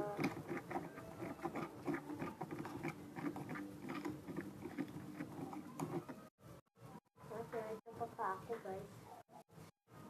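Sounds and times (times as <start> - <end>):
slime squelching: 0.0 - 6.2.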